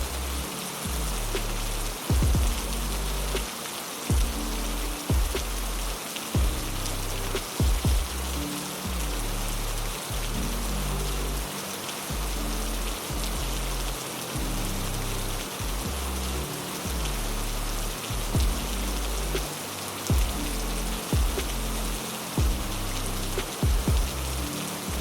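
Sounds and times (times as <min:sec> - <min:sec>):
heavy rain hiss: 0:00.0 - 0:25.0
music of low bass notes: 0:00.0 - 0:25.0
short low thumps: 0:00.9 - 0:03.5, 0:04.1 - 0:04.5, 0:05.1 - 0:09.2, 0:18.1 - 0:19.5, 0:20.1 - 0:21.6, 0:22.4 - 0:24.3.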